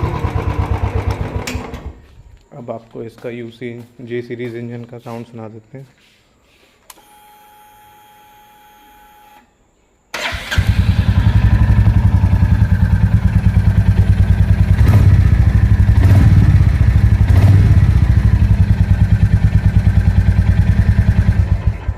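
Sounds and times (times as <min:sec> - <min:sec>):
motorcycle engine starting and idling: 0:00.0 - 0:02.1, 0:10.1 - 0:21.9
faint electronic tone: 0:07.0 - 0:09.6.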